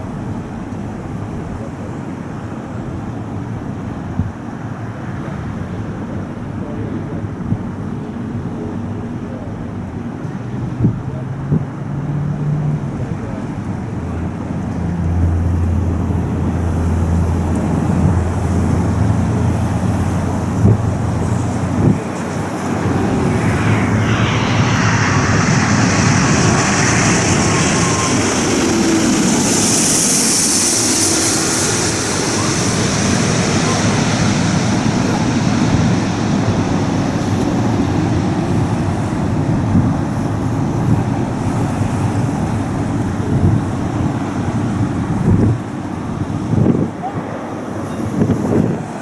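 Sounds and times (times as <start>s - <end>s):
jet airliner passing: 0.0s - 49.0s.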